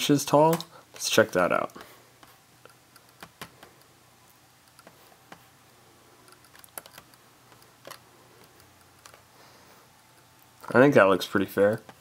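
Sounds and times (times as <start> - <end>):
keyboard and mouse clicks: 1.7 - 3.9, 4.6 - 5.4, 6.2 - 9.2.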